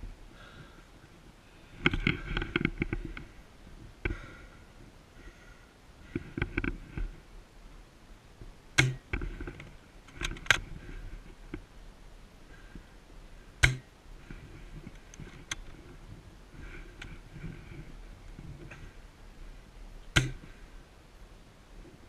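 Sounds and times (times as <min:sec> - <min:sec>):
rustling: 0:08.4 - 0:22.0
airsoft gun shots: 0:20.2 - 0:20.4.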